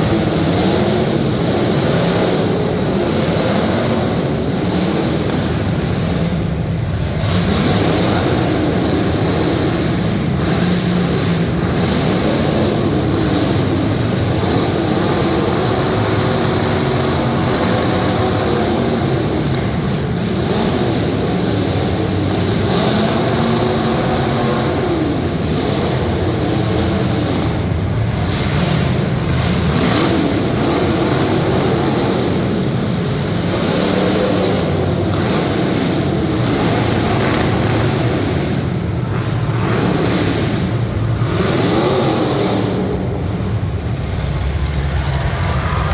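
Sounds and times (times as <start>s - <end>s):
car engines revving: 0.0s - 45.9s.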